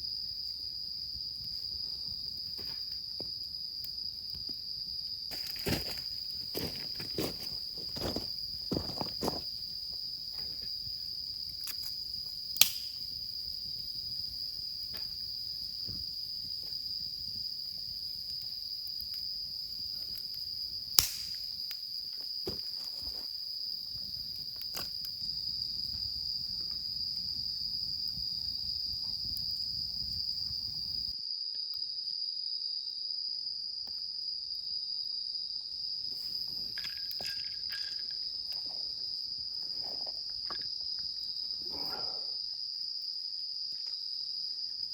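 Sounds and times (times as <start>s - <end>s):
insects trilling: 0.0s - 44.9s.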